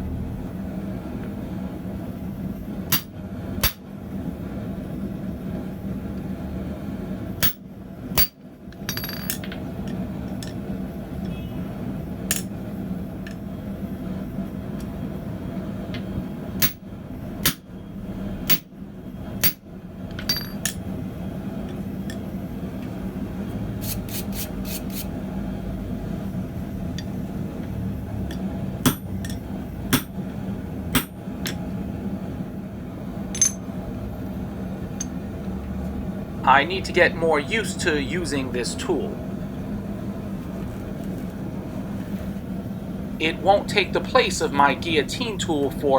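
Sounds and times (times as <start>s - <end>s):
steady low hum: 0.0s - 45.9s
hammer striking metal: 28.8s - 29.4s, 33.4s - 33.6s.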